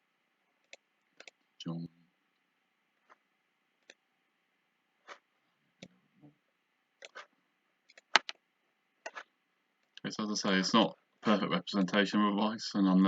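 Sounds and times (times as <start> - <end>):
computer mouse clicking: 0.6 - 1.4, 3.8 - 4.0, 7.0 - 8.4, 9.0 - 10.1.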